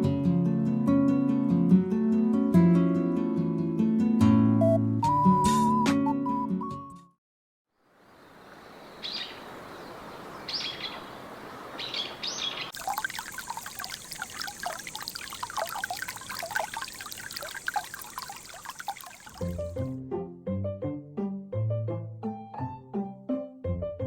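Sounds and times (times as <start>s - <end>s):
water trickling and dripping: 8.2s - 19.9s
bird calling: 8.4s - 12.8s.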